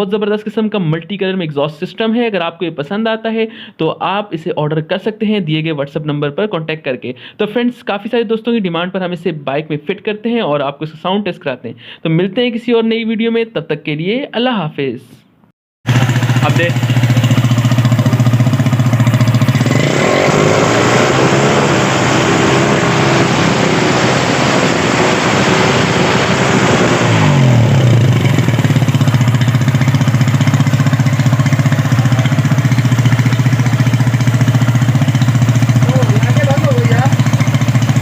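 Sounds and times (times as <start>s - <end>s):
motorcycle engine idling and revving: 15.9s - 38.0s.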